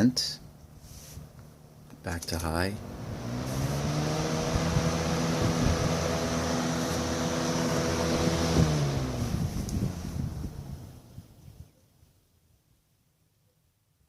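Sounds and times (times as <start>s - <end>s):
electric fan motor hum: 0.0s - 11.4s
rush of air from fan blades: 2.8s - 11.4s
fan switch click: 9.6s - 9.9s.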